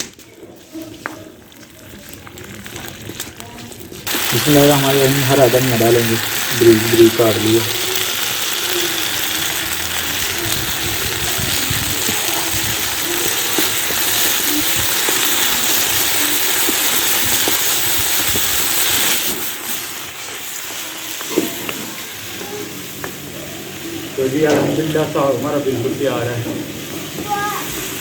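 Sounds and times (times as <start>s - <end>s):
greens sizzling in hot oil: 1.4s - 28.0s.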